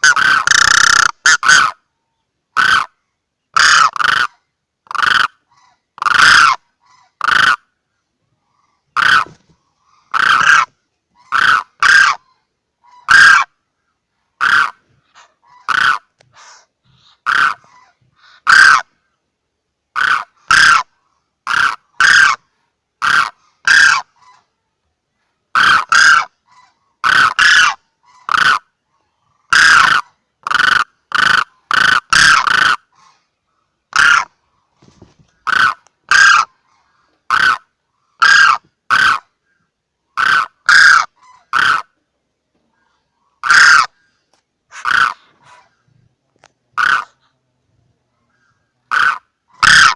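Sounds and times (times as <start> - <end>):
crane honking calls: 10.1 - 13.6, 14.4 - 16.2, 17.2 - 19.0, 20.0 - 22.4, 25.5 - 28.7, 29.5 - 33.2, 33.9 - 34.4, 35.4 - 39.4, 40.2 - 42.0, 43.4 - 45.8, 46.8 - 47.2, 48.8 - 49.9.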